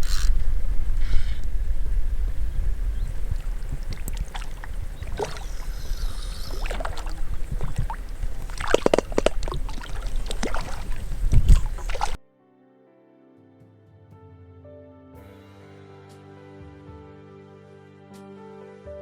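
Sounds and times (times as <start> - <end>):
steady low rumble: 0.0 - 12.2.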